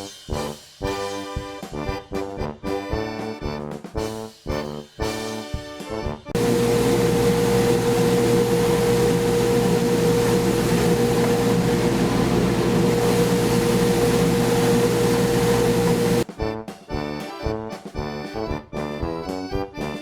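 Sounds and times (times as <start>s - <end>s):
table saw whining: 6.4s - 16.2s.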